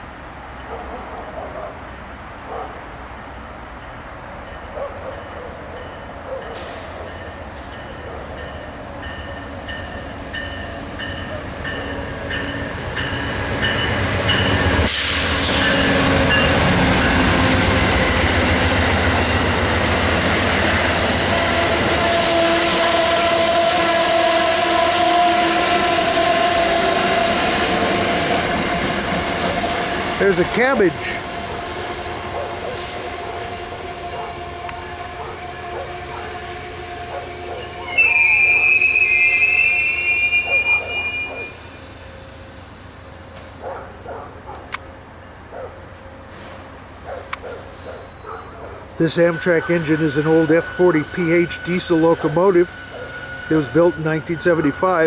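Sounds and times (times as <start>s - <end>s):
diesel locomotive rushing past: 0.0s - 44.1s, 44.8s - 55.0s
train coaches rolling by: 0.0s - 55.0s
high squealing wheels or brakes: 2.8s - 19.6s, 20.6s - 31.6s, 37.5s - 43.1s, 45.6s - 55.0s
railway crossing bell ding: 3.8s - 14.9s, 15.6s - 17.4s, 49.1s - 55.0s.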